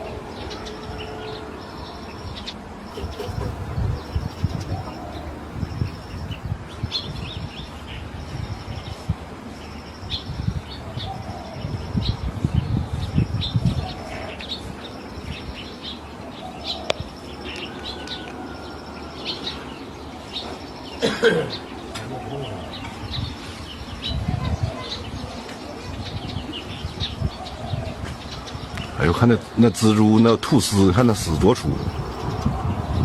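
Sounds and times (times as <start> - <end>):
low rumbling noise: 0.0 - 20.9, 31.0 - 33.0
small birds chirping: 0.0 - 33.0.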